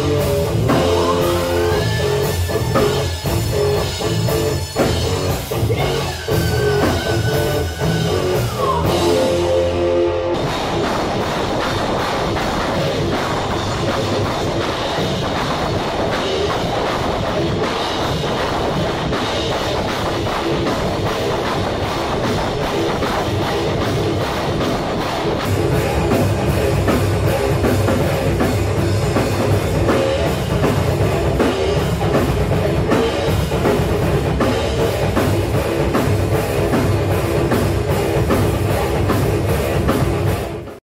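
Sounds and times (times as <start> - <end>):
electric guitar notes bending: 0.0 - 40.8
heavy drums: 0.0 - 40.8
rock band playing: 0.0 - 40.8.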